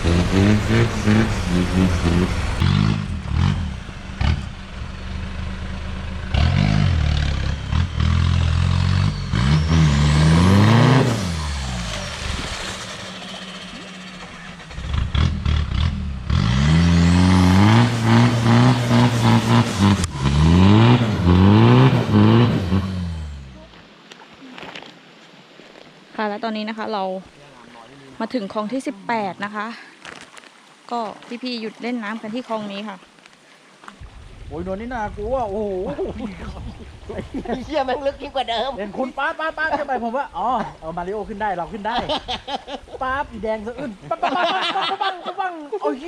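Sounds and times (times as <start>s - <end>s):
engine revving hard: 0.0s - 4.9s, 6.2s - 23.5s.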